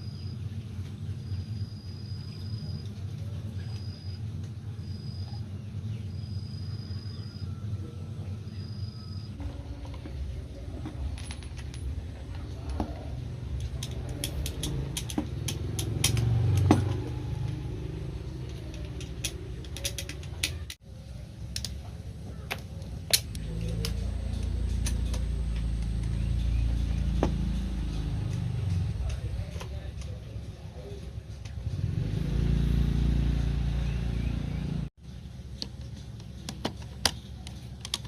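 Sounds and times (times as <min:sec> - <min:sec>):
steady low rumble: 0:00.1 - 0:36.4
metal parts clicking and clinking: 0:09.4 - 0:20.8, 0:22.5 - 0:30.4.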